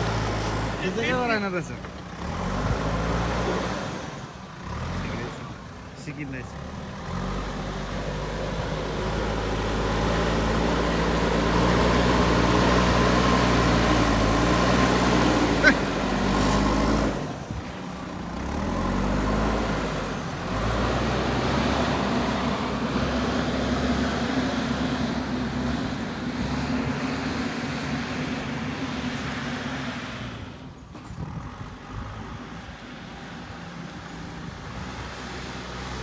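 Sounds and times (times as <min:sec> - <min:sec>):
diesel engine under load: 0:00.0 - 0:36.0.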